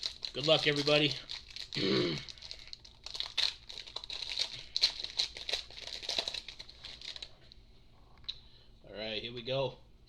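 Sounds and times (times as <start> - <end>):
plastic wrapper crinkling and tearing: 0.0 - 7.5.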